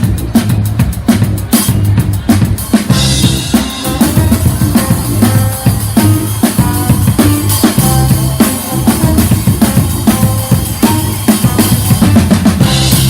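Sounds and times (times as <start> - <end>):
drum kit beat: 0.0 - 13.0
horns playing a melody: 2.9 - 13.0.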